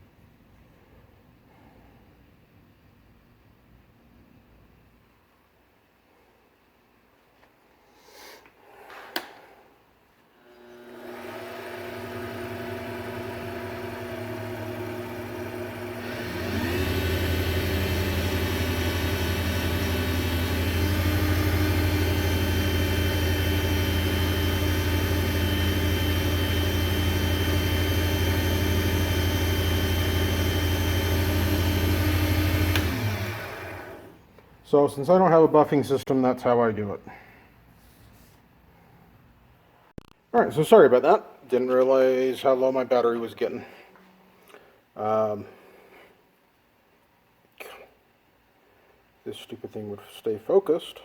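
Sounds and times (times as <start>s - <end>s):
wood lathe motor hum and whine: 10.4s - 34.2s.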